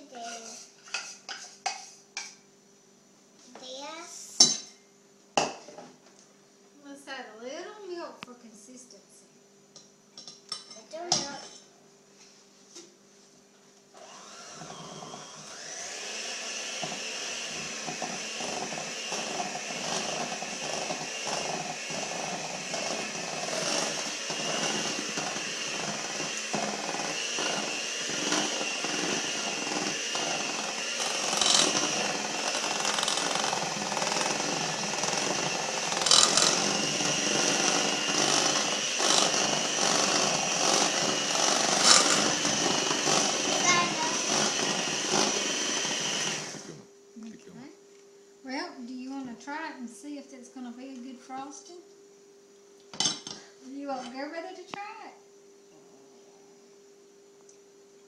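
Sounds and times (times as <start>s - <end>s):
electric mixer whining: 14.0s - 46.9s
mixer beaters clattering: 16.8s - 46.6s.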